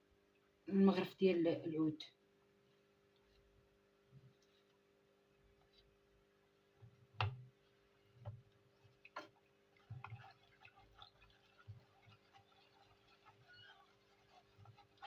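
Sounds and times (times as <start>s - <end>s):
spoon scraping pot: 8.8s - 15.0s.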